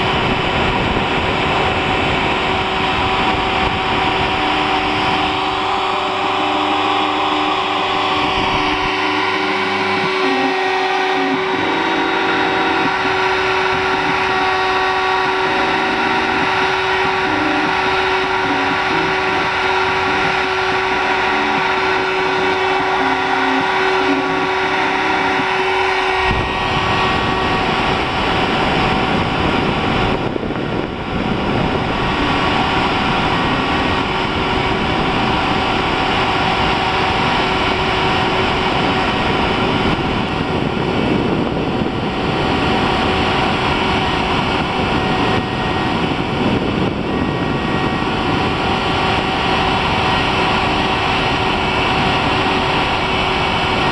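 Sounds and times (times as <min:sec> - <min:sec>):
cnc motor whine: 0:00.0 - 0:53.9.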